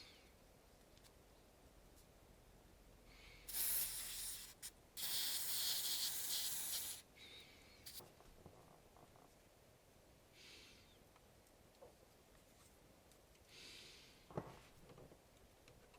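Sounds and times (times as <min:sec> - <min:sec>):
spraying hiss: 0:03.5 - 0:07.1, 0:07.8 - 0:08.0.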